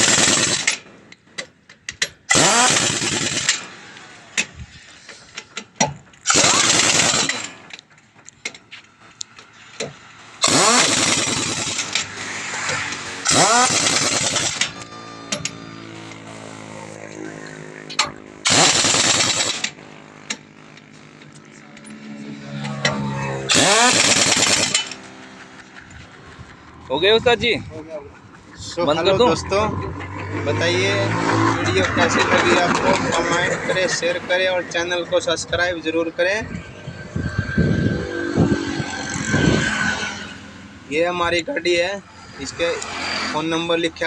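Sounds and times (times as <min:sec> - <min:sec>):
pneumatic impact wrench whining: 0:00.0 - 0:01.0, 0:01.9 - 0:07.8, 0:09.4 - 0:17.2, 0:17.8 - 0:21.0, 0:22.5 - 0:26.5
engine-like hum: 0:00.0 - 0:44.0.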